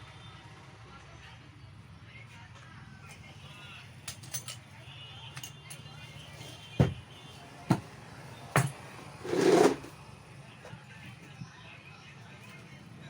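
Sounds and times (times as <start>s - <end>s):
faint background music: 0.0s - 13.0s
tools rattling: 4.1s - 4.6s, 8.6s - 9.9s.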